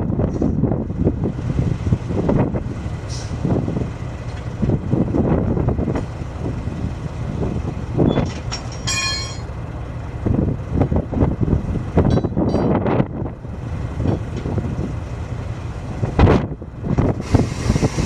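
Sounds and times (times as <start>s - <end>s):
diesel engine running: 0.0s - 18.0s
metal clanks and knocks: 8.1s - 9.5s, 12.0s - 12.9s, 14.0s - 14.5s
high metallic ring: 8.6s - 9.5s.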